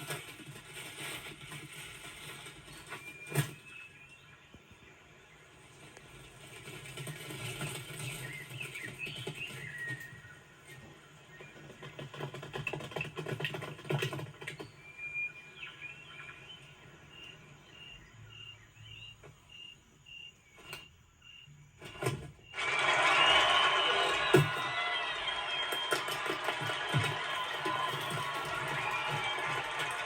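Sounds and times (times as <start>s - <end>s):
cricket chirping: 17.1s - 22.5s
crowd cheering: 22.6s - 30.0s.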